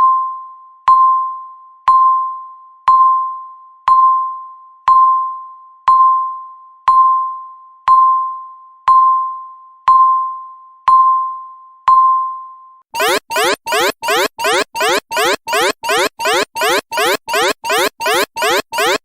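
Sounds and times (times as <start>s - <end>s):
countdown timer beeps: 13.0s - 19.0s
electronic alarm rising sweeps: 13.0s - 19.0s.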